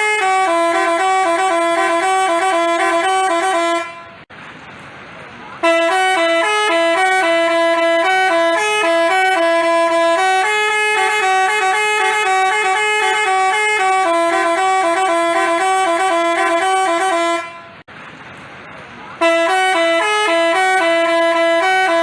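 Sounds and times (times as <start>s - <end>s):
bus horn playing melody: 0.0s - 4.3s, 5.6s - 17.9s, 19.2s - 22.0s.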